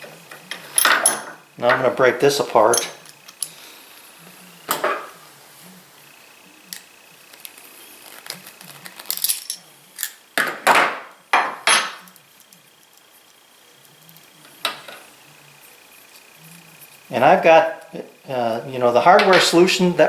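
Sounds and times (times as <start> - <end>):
metal hardware clinking: 2.6 - 3.5, 8.9 - 10.2.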